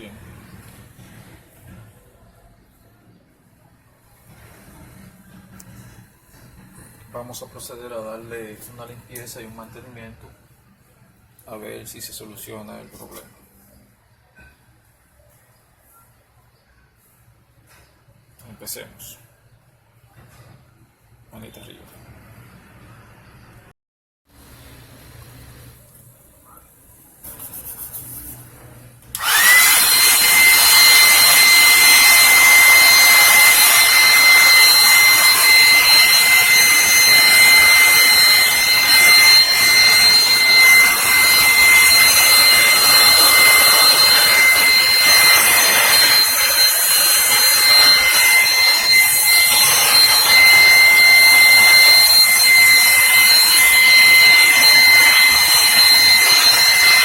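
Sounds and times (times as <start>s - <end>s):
electric fan motor whining: 29.1s - 57.0s.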